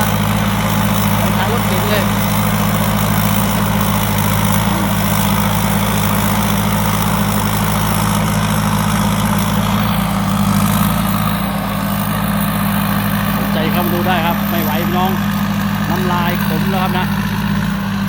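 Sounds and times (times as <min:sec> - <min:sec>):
combine harvester engine drone: 0:00.0 - 0:18.0
machinery noise: 0:00.0 - 0:18.0.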